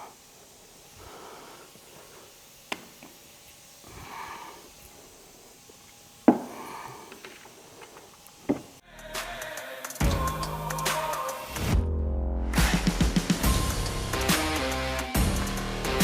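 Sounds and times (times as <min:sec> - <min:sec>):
person sniffing and breathing hard: 0:00.0 - 0:02.6, 0:03.8 - 0:05.6, 0:06.3 - 0:08.0
handling knocks: 0:06.3 - 0:08.8.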